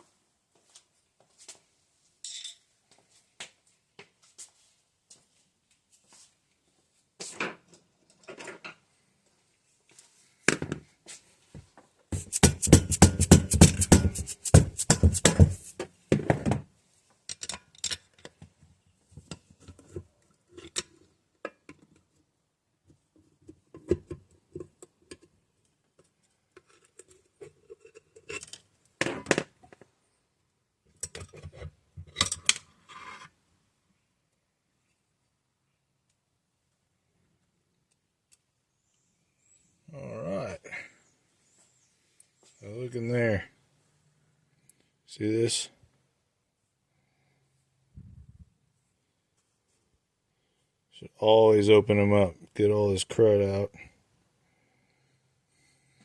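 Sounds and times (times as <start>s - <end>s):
tools and metal parts clinking: 2.2s - 2.6s, 17.3s - 18.3s.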